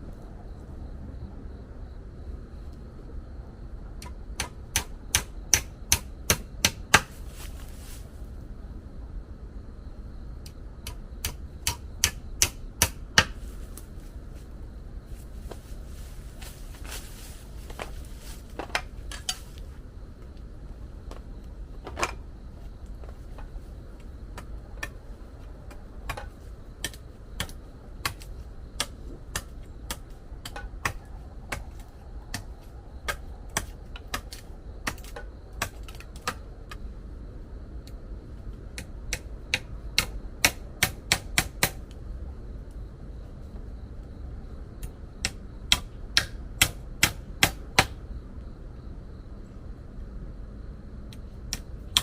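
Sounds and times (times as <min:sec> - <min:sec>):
low steady rumble: 0:00.0 - 0:52.0.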